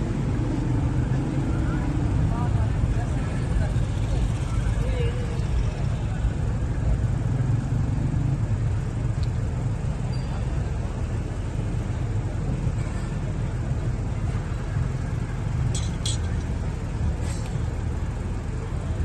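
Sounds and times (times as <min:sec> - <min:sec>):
road traffic rumble: 0:00.0 - 0:19.0.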